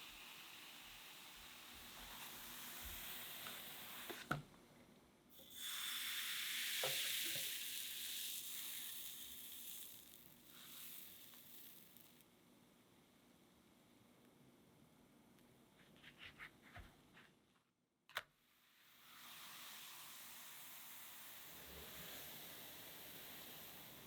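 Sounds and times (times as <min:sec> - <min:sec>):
batter sizzling in a pan: 0:00.0 - 0:04.3, 0:05.3 - 0:12.2, 0:18.6 - 0:24.0.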